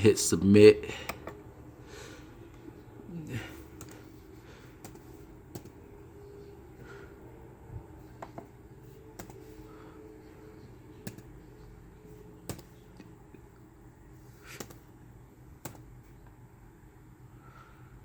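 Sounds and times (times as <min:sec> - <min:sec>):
faint steady hum: 0:00.0 - 0:18.0
computer mouse clicks: 0:04.8 - 0:05.8, 0:09.2 - 0:09.4, 0:11.0 - 0:11.3, 0:12.5 - 0:13.1, 0:14.6 - 0:14.9, 0:15.6 - 0:15.9.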